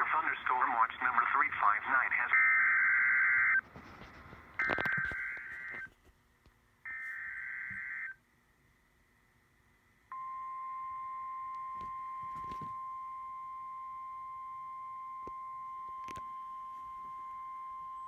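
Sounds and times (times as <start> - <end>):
steady high alarm beep: 10.1 - 18.0.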